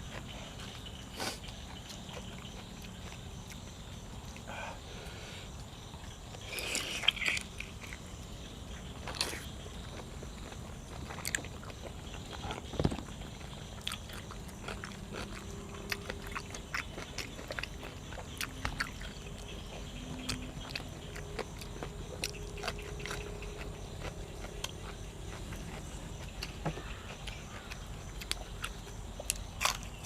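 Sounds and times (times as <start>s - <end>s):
chewing and biting food: 0.0s - 4.5s, 5.6s - 30.0s
mouth clicks and crunches: 5.6s - 8.1s, 8.9s - 30.0s.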